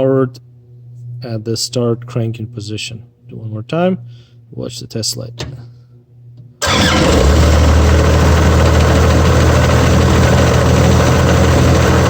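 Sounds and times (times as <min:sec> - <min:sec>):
loud engine running: 0:06.6 - 0:12.0.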